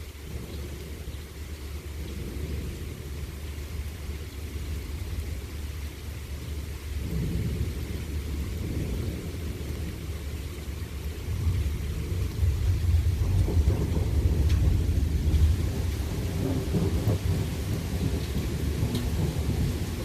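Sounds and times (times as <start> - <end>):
rain hissing: 0.0 - 20.0
thunder rumbling: 6.5 - 20.0.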